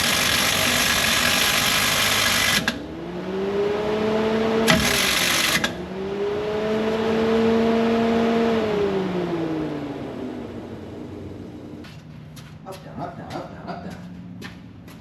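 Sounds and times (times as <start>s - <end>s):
electric motor whirring: 0.0s - 2.8s, 4.6s - 5.8s.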